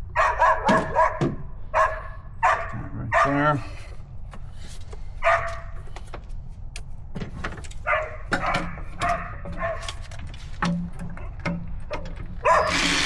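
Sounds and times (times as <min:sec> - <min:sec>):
dog barking: 0:00.0 - 0:03.6, 0:05.2 - 0:05.8, 0:07.8 - 0:10.0, 0:12.4 - 0:12.8
tools clicking and knocking: 0:05.9 - 0:13.0.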